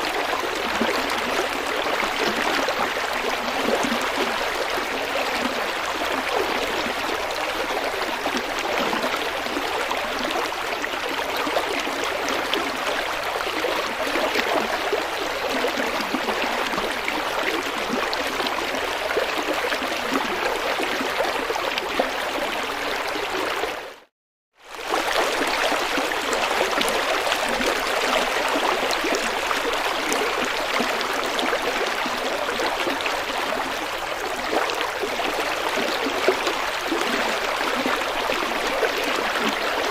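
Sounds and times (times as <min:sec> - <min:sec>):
river flowing: 0:24.7 - 0:39.9.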